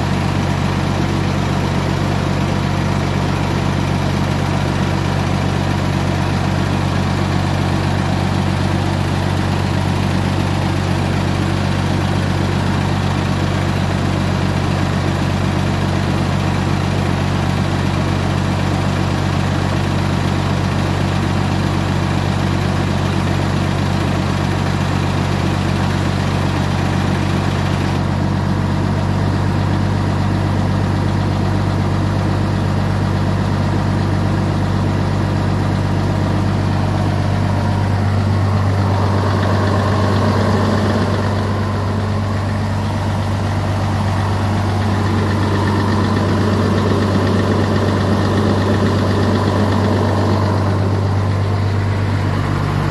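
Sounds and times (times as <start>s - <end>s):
engine humming: 0.0s - 16.1s, 26.7s - 52.9s.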